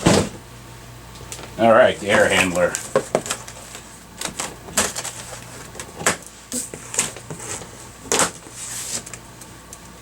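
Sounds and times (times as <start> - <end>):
packaging knocks and scrapes: 2.2 - 9.2.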